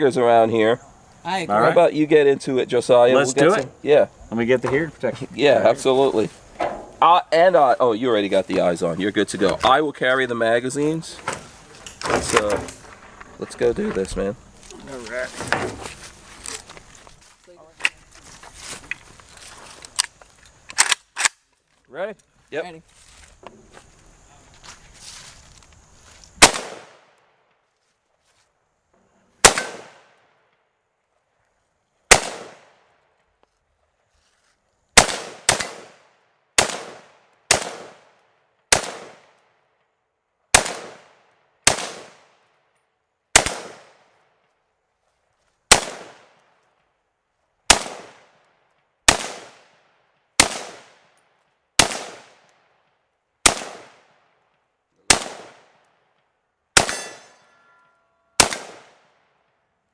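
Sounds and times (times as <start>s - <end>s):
rifle shots with echo: 26.4s - 27.0s, 29.4s - 30.2s, 32.1s - 32.8s, 35.0s - 38.1s, 38.7s - 39.4s, 40.5s - 42.4s, 43.3s - 44.0s, 45.7s - 46.4s, 47.7s - 48.3s, 49.1s - 49.8s, 50.4s - 51.1s, 51.8s - 52.4s, 53.4s - 54.2s, 55.1s - 55.7s, 56.8s - 57.3s, 58.4s - 59.2s.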